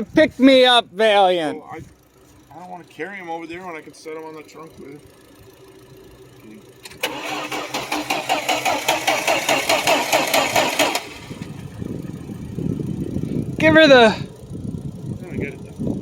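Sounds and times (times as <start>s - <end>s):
car engine cranking by starter: 3.4s - 14.2s.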